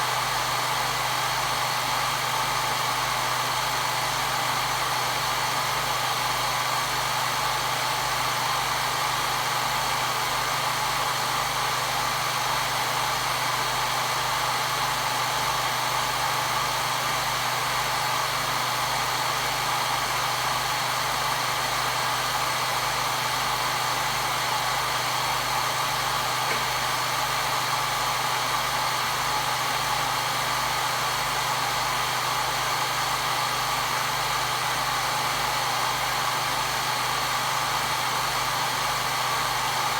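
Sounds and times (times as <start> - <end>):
hair dryer running: 22.0 - 33.8.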